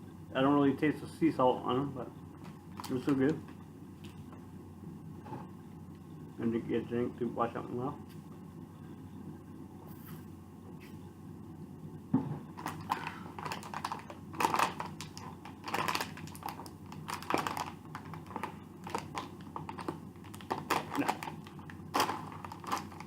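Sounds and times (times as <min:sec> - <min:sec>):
snack bag crinkling: 0:02.4 - 0:03.4, 0:12.5 - 0:23.0.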